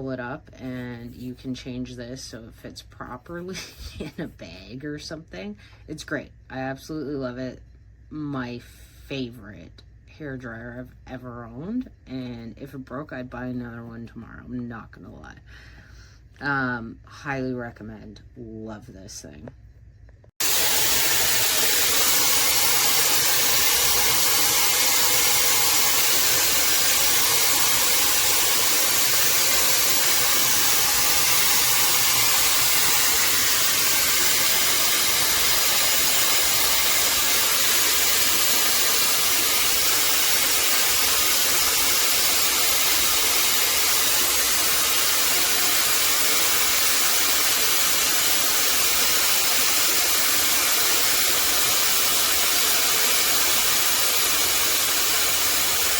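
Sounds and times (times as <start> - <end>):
hair dryer running: 20.4 - 55.9.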